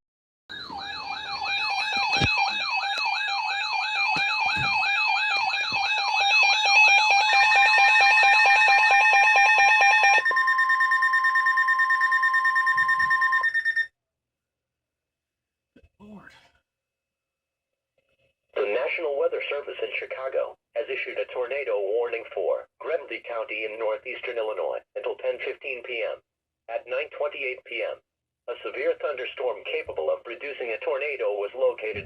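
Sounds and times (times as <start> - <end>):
electronic alarm siren warbling: 0.5 - 13.9
steady alarm tones: 0.5 - 13.9.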